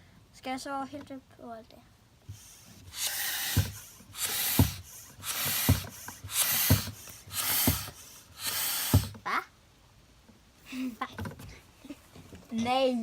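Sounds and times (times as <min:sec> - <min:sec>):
air pump hissing: 0:02.2 - 0:09.2.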